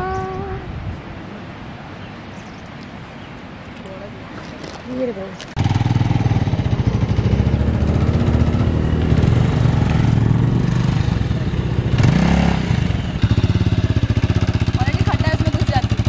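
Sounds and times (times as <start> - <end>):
motorcycle engine running: 5.6 - 16.0.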